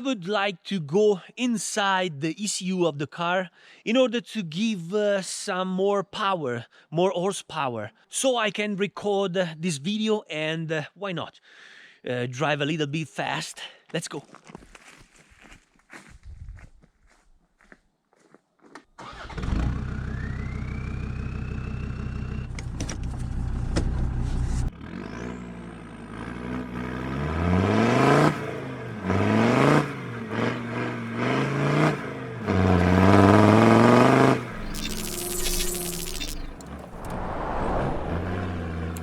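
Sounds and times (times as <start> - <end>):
diesel engine starting and idling: 19.0 - 26.9, 27.6 - 39.0
engine revving: 24.7 - 39.0.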